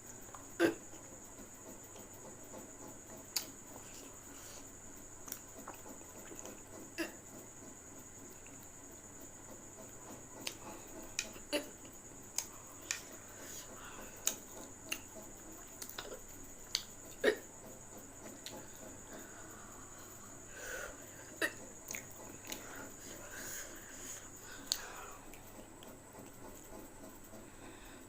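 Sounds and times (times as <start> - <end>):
mouth eating sounds: 12.4 - 17.5, 20.9 - 26.4.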